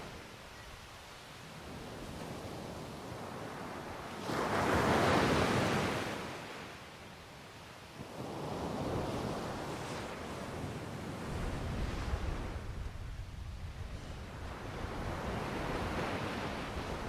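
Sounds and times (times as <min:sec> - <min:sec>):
ocean waves breaking: 0:01.7 - 0:06.6
wind on microphone: 0:08.0 - 0:17.0.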